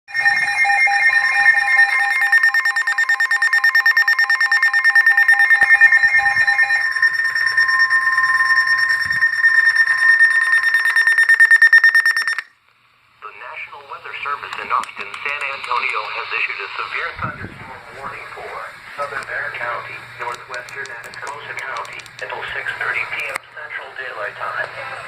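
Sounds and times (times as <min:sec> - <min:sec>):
weather alert radio alarm: 0:00.1 - 0:12.5.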